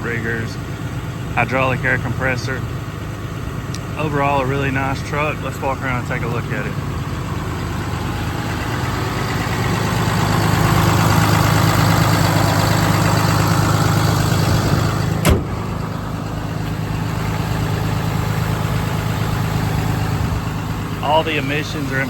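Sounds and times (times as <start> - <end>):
diesel engine idling: 0.0 - 22.0.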